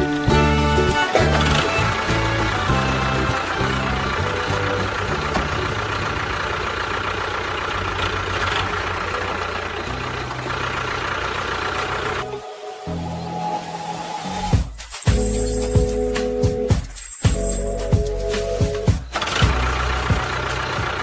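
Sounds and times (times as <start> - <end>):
engine idling: 0.0 - 12.5, 15.1 - 21.0.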